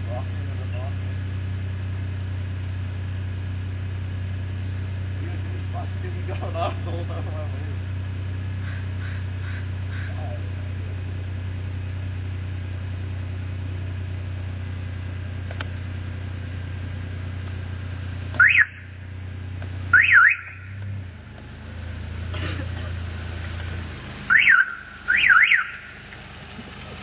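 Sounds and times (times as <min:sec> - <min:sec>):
car alarm siren wails: 0:18.4 - 0:19.0, 0:19.9 - 0:20.8, 0:24.3 - 0:26.0.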